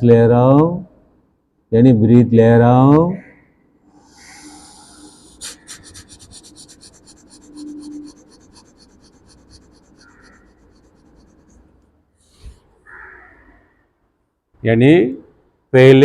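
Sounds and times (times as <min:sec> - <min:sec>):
man's rapid forceful breathing: 0:04.1 - 0:11.2.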